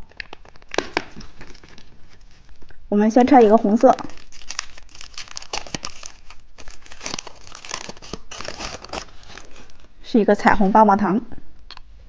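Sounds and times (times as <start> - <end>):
plastic wrapper crinkling: 0.0 - 10.0.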